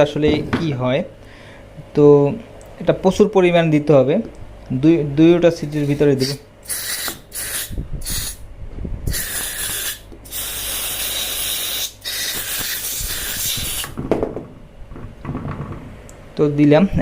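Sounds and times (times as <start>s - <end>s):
aerosol spray hissing: 5.8s - 8.4s, 9.1s - 14.0s.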